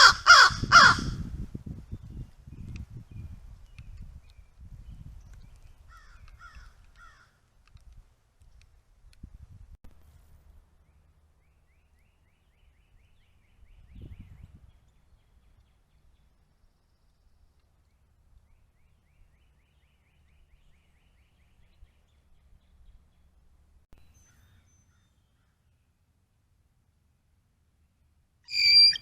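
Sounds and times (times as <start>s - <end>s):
songbird trilling: 28.5s - 29.0s.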